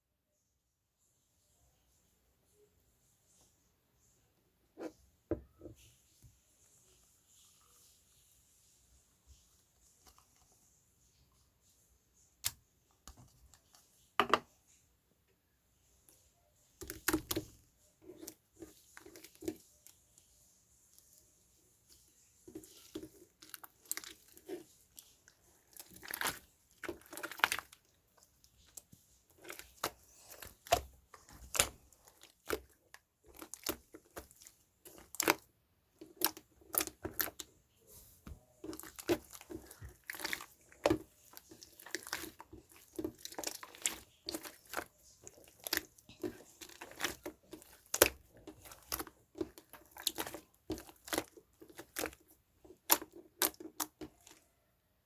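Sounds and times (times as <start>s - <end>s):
paper and plastic rustling: 16.8s - 54.5s.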